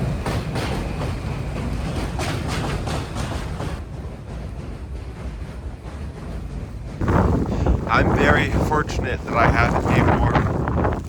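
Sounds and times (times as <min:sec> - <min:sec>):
wind buffeting microphone: 0:04.0 - 0:11.0
steady low rumble: 0:07.0 - 0:11.0.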